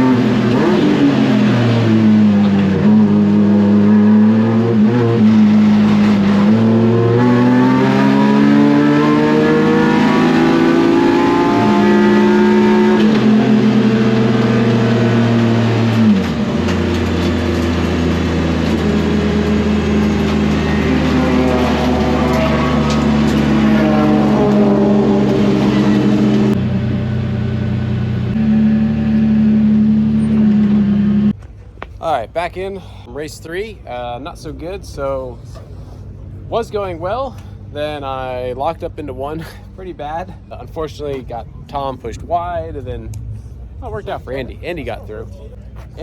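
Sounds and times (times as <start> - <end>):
race car engine revving: 0.0 - 31.4.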